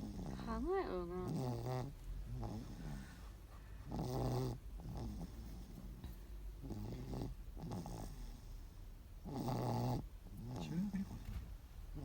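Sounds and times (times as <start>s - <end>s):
rattling snores: 0.0s - 0.6s, 1.2s - 3.2s, 3.9s - 5.8s, 6.6s - 8.6s, 9.2s - 11.4s.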